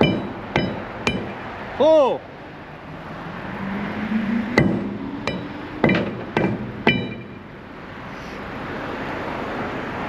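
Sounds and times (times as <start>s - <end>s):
hammer striking steel: 0.0s - 1.4s, 4.6s - 7.5s.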